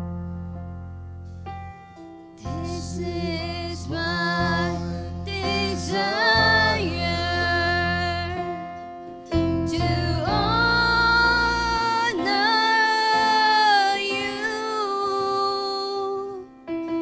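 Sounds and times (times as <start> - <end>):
electric keyboard chords: 0.0 - 17.0
person singing with vibrato: 2.4 - 8.7, 9.6 - 16.6.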